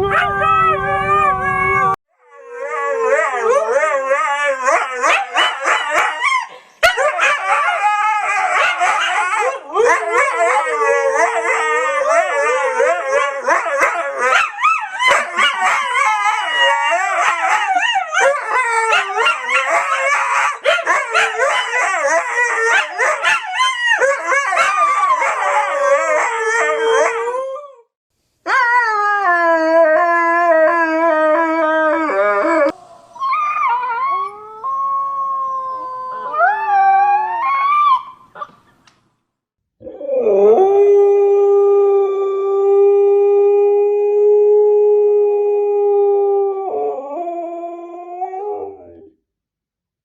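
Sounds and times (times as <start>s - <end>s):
dog howling and yipping: 0.0s - 27.8s, 28.5s - 38.2s.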